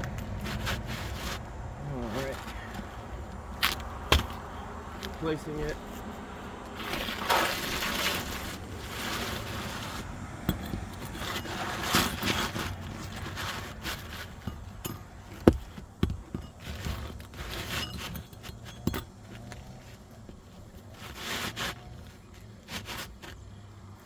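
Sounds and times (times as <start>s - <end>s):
roof shingles scraping: 0.0s - 24.0s
sharp knocks: 3.6s - 4.5s.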